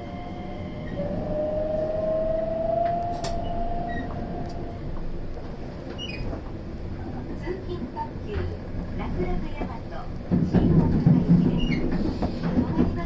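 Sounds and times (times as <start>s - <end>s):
train whine rising in pitch: 0.0s - 5.0s
electric train rumble: 0.0s - 13.0s.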